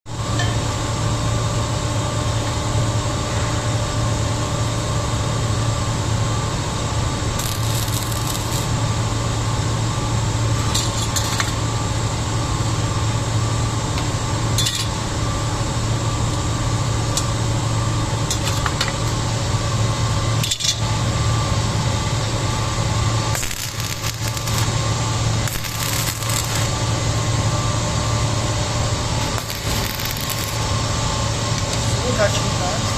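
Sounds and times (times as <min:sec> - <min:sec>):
low hum: 0:05.8 - 0:32.9
welding arc crackling: 0:07.2 - 0:09.2, 0:10.5 - 0:11.7, 0:22.8 - 0:27.1, 0:28.9 - 0:32.5.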